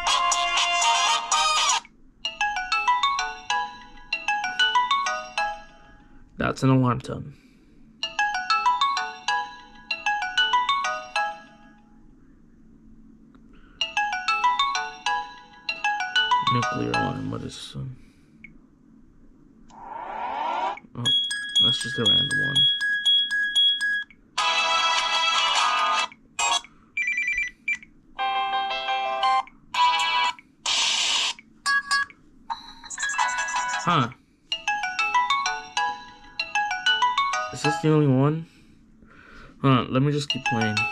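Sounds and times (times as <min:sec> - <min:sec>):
phone alarm chiming melody: 0:13.8 - 0:17.4, 0:21.0 - 0:25.0, 0:34.6 - 0:38.2, 0:40.3 - 0:40.9
smartphone ringtone previews: 0:15.8 - 0:17.5, 0:19.8 - 0:27.3, 0:34.7 - 0:38.2, 0:40.3 - 0:40.9.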